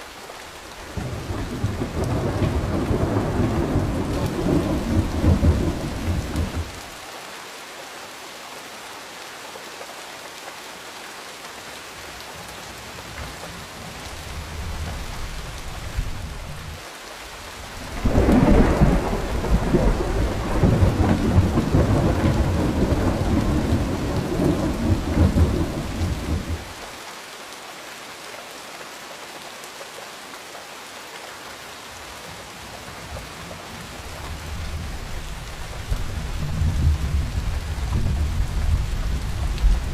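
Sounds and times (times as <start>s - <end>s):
steady rain: 0.0s - 39.9s
rolling thunder: 1.0s - 6.8s, 17.8s - 26.8s, 35.8s - 39.9s.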